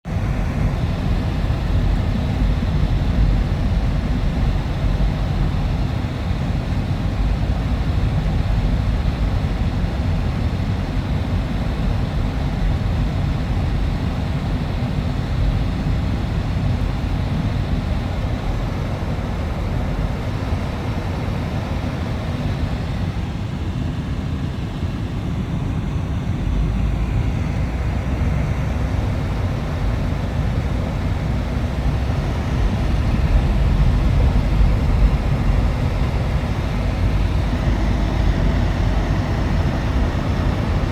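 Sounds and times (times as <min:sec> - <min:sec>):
low rumbling noise: 0:26.0 - 0:40.9.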